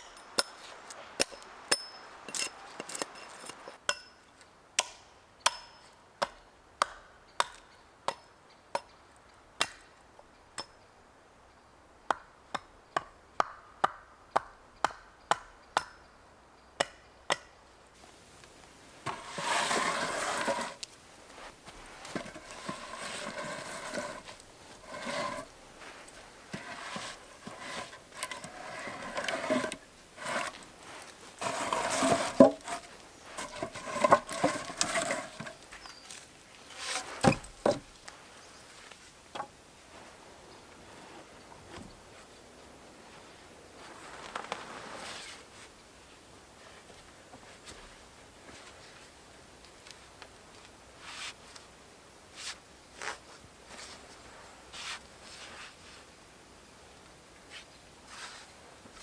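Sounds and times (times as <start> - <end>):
scraping and rustling: 18.0 - 38.2, 43.8 - 45.7.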